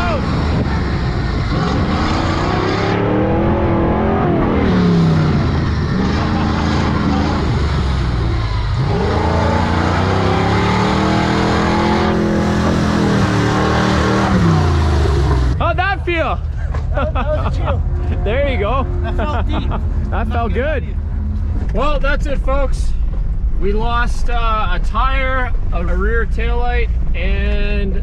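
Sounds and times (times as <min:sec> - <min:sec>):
engine revving hard: 0:00.0 - 0:15.6.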